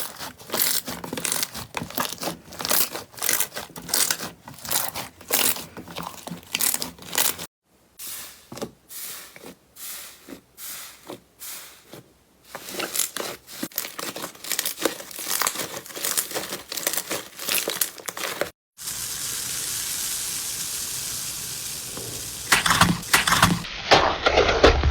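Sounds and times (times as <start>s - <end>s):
soft squishes: 9.0s - 18.5s
hands working slime crackling: 11.9s - 18.5s, 22.5s - 23.6s
steady hiss: 18.8s - 23.7s.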